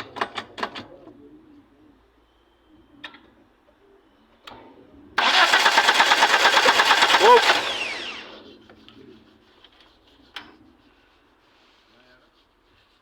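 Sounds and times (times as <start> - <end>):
starter motor cranking engine: 5.2 - 8.4.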